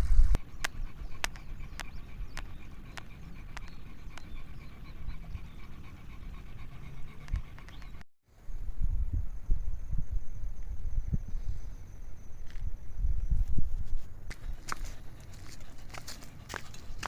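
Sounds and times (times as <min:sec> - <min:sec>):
dog panting: 0:00.4 - 0:08.0, 0:14.3 - 0:17.0.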